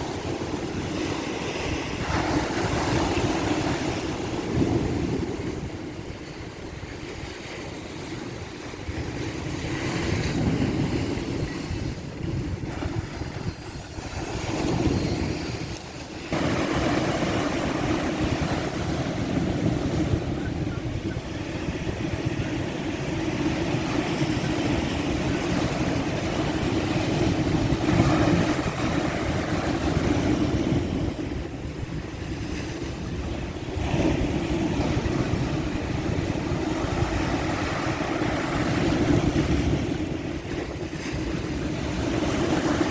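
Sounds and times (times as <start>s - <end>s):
ocean waves breaking: 0.0s - 42.9s.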